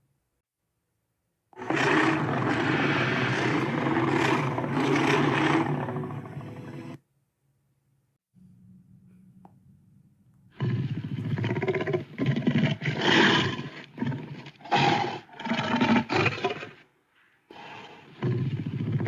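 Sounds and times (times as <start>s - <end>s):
dinosaur roaring: 1.6s - 7.0s, 10.6s - 16.8s, 17.5s - 19.0s.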